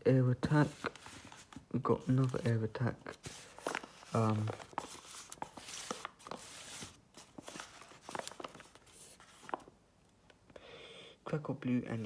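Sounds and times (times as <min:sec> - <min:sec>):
cardboard rustling and scraping: 0:00.4 - 0:09.7.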